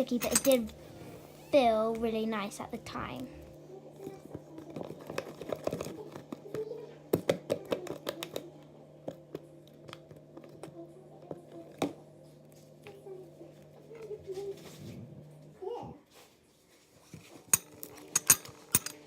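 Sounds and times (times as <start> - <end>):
low hum: 0.2 - 5.0.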